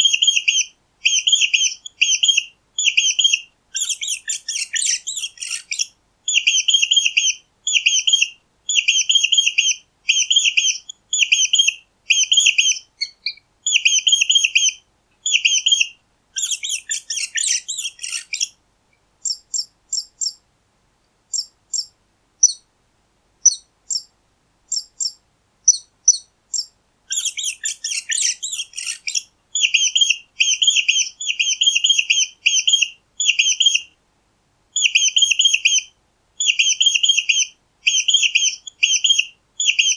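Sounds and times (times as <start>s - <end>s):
mice squeaking: 0.2s - 18.5s, 24.7s - 33.8s, 36.4s - 39.9s.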